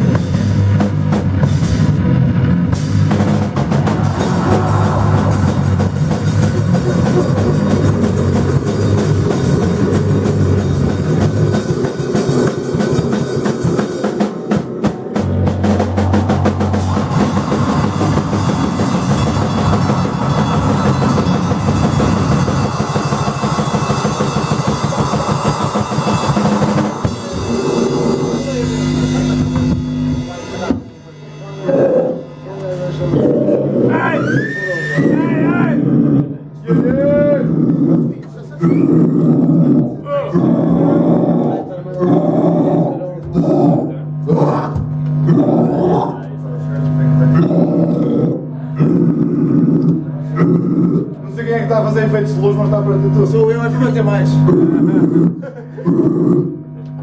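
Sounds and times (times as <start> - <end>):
held low drone: 0.0 - 30.6, 31.4 - 56.8
low bass notes: 0.0 - 30.8, 35.0 - 57.0
live rock band playing: 0.0 - 32.2
pounding drum kit: 0.0 - 46.2.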